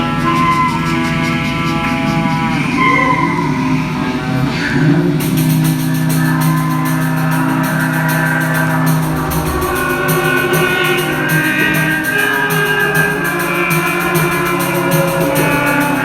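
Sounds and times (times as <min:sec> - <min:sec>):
sustained pitched tones: 0:02.1 - 0:16.0
fast sharp percussion beat: 0:05.1 - 0:16.0.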